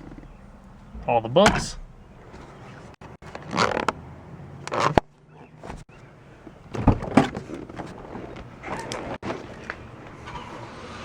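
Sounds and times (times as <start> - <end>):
dull thumps: 0.0 - 3.0
handling rustles and knocks: 0.0 - 4.0, 4.6 - 9.9.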